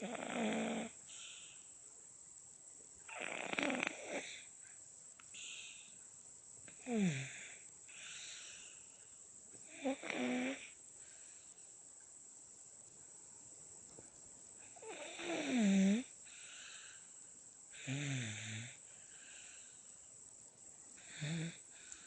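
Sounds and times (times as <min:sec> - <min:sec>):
baby snoring: 0:00.0 - 0:01.0, 0:03.1 - 0:04.5, 0:06.8 - 0:08.5, 0:09.6 - 0:10.8, 0:14.7 - 0:16.1, 0:17.8 - 0:18.8, 0:21.0 - 0:21.6.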